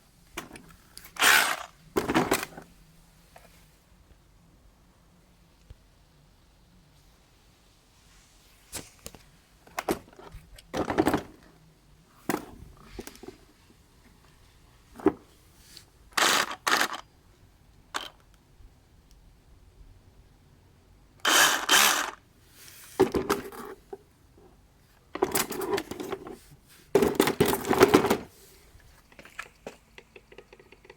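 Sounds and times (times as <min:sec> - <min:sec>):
rustling or scraping: 0:00.6 - 0:02.7, 0:21.3 - 0:24.0, 0:25.2 - 0:29.5
handling clicks and knocks: 0:25.1 - 0:26.4, 0:27.0 - 0:28.3, 0:29.1 - 0:30.9.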